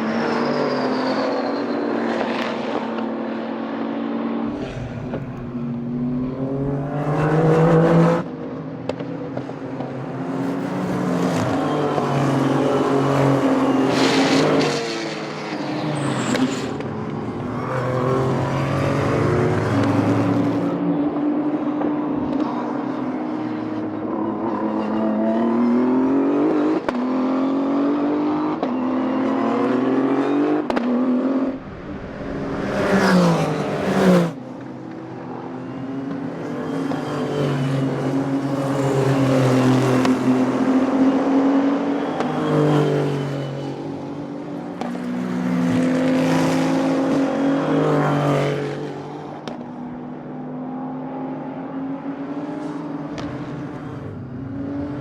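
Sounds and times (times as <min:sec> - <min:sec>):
race car passing close: 0:00.0 - 0:20.9, 0:29.2 - 0:50.2
race car engines revving: 0:00.0 - 0:55.0.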